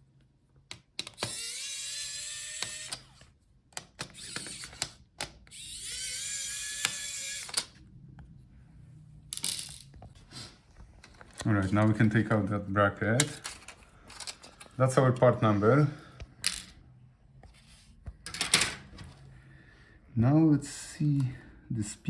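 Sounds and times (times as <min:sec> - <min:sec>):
clicks and taps of bit and parts: 0:00.6 - 0:01.4, 0:03.7 - 0:05.5
electric screwdriver whining: 0:01.0 - 0:07.8.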